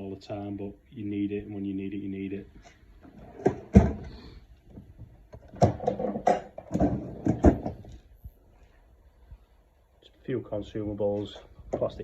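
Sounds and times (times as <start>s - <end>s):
plastic drawers clattering: 3.0s - 4.3s, 5.0s - 8.0s.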